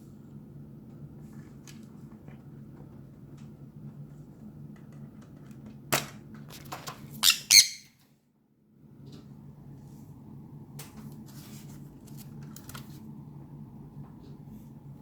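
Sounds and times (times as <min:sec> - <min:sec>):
parrot squawking: 0:07.2 - 0:07.9.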